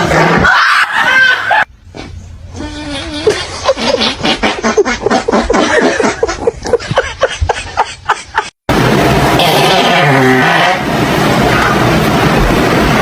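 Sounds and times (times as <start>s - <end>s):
person laughing hard: 0.0s - 1.7s, 3.0s - 8.6s.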